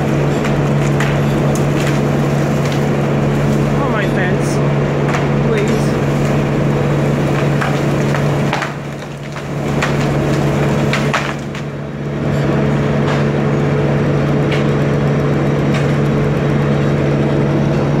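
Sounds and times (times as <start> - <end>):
wood knocking and cracking: 0.0 - 3.8, 5.0 - 11.8
machinery engine running: 0.0 - 18.0.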